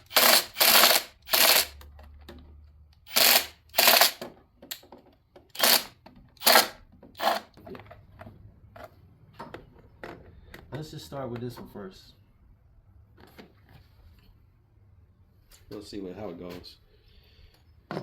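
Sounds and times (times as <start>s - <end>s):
hand ratchet clicking: 0.0s - 1.9s, 3.0s - 4.2s, 5.6s - 7.5s.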